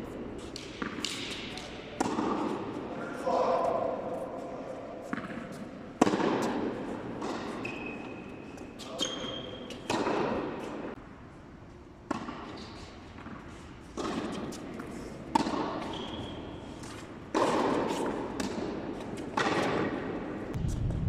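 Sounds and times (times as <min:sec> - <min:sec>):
tennis ball hits echoing: 0:00.6 - 0:02.6, 0:05.1 - 0:07.7, 0:09.8 - 0:10.6, 0:12.1 - 0:12.5, 0:14.0 - 0:14.5, 0:15.3 - 0:15.9, 0:17.3 - 0:20.2.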